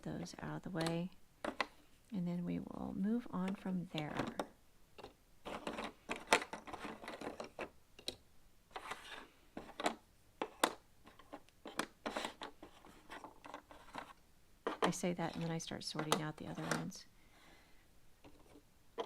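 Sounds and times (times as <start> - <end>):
puzzle pieces clicking and tapping: 4.0 - 8.2.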